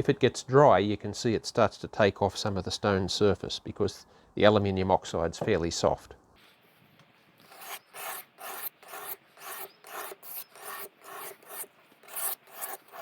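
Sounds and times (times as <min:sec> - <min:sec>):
knife scraping on sharpening stone: 0:07.5 - 0:13.0.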